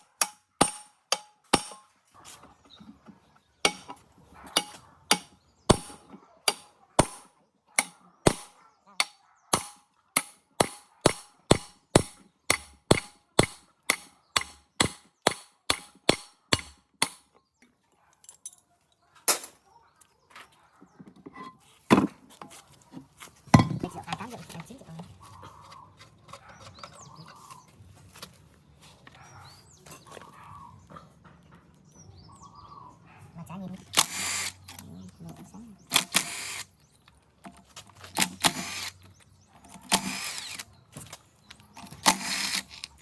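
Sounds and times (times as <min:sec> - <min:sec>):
hand hammer striking: 0:00.2 - 0:01.8, 0:04.6 - 0:07.2, 0:07.8 - 0:17.2.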